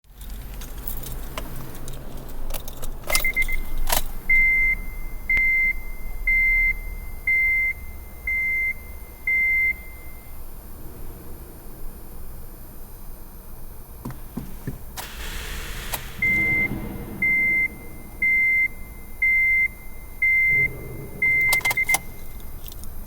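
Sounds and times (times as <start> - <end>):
keys jangling: 0.1 - 4.3, 21.2 - 23.0
car warning chime beeping: 3.2 - 10.5, 15.0 - 22.9.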